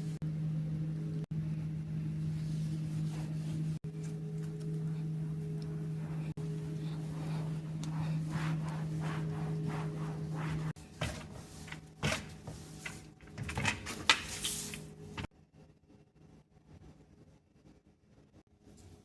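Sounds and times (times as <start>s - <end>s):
steady low hum: 0.0s - 19.0s
scrubbing strokes: 2.4s - 3.8s, 4.9s - 13.3s, 13.9s - 15.0s.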